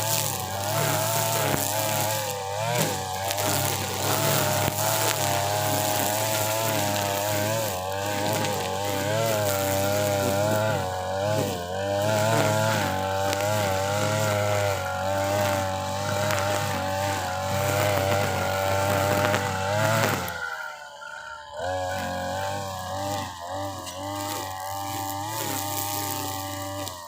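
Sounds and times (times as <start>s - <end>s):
brush cutter cutting grass: 0.0s - 27.0s.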